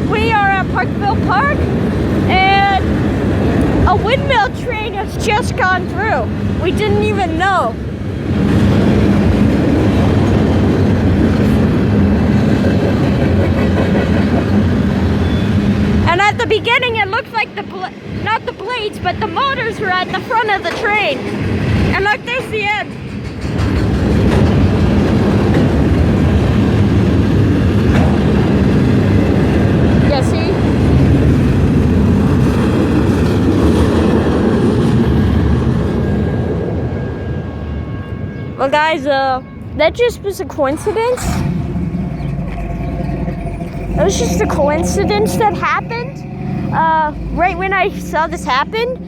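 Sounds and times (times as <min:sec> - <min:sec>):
train wheels rumbling on rails: 0:00.0 - 0:49.0
low hum: 0:39.4 - 0:49.0.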